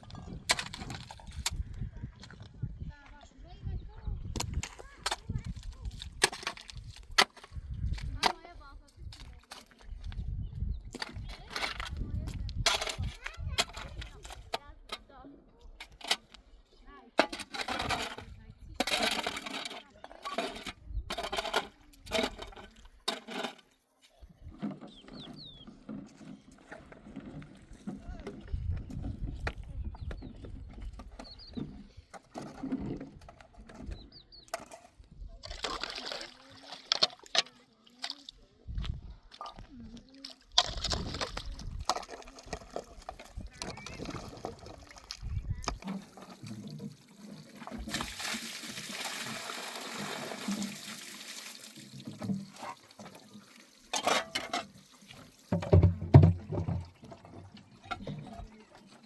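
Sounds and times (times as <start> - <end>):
water running: 45.8 - 59.0
knocks and heavy thumps: 55.6 - 56.9.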